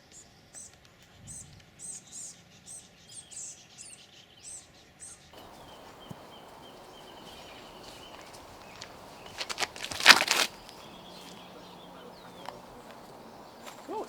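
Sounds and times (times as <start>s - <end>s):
faint hiss: 5.4s - 14.0s
small bird chirping: 5.4s - 14.0s.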